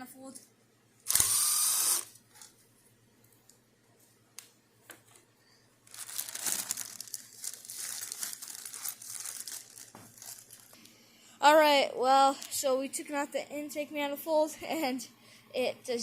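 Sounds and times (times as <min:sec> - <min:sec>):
rough crackling tearing noise: 0:05.9 - 0:10.7.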